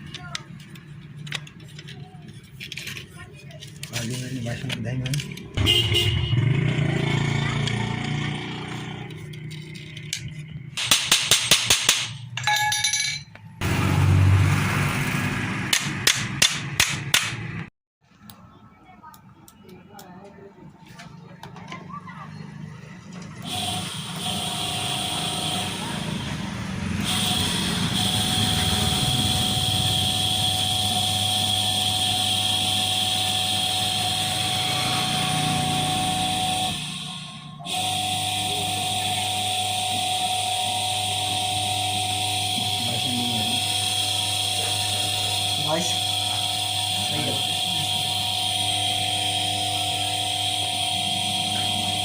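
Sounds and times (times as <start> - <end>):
metal clicks and clinks: 12.0 - 13.5
electric motor whining: 23.2 - 52.0.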